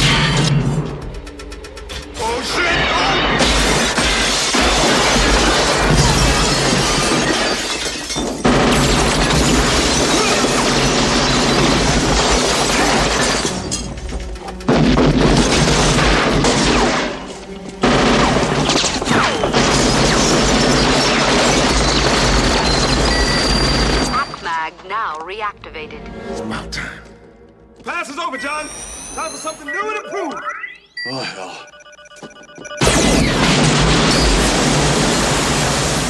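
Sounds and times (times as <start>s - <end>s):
action film score: 0.0s - 36.0s
crashing and shattering effects: 2.6s - 13.9s.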